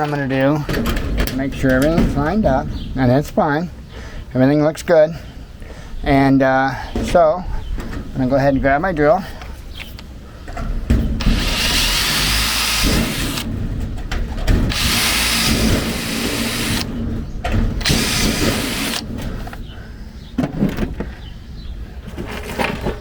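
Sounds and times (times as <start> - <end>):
power drill drilling into sheet metal: 11.2 - 13.5, 14.6 - 17.0, 17.8 - 19.1.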